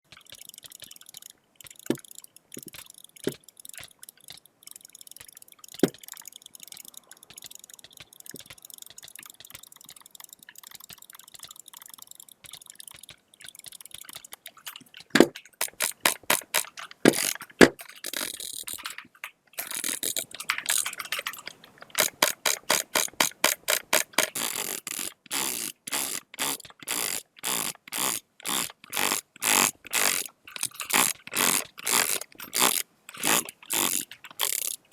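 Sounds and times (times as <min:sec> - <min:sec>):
sharp clicks: 0:00.0 - 0:34.9.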